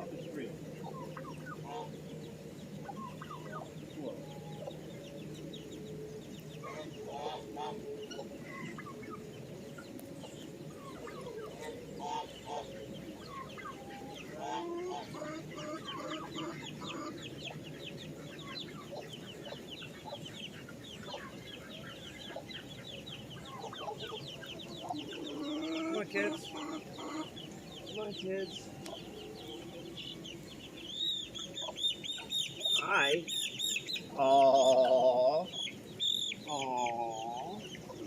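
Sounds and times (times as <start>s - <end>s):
baby chicks peeping: 0.0s - 38.0s
chickens clucking: 0.0s - 38.0s.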